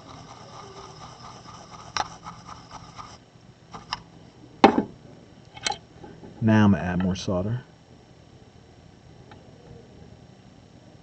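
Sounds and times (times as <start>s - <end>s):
soldering iron tip scraping: 0.0s - 4.0s.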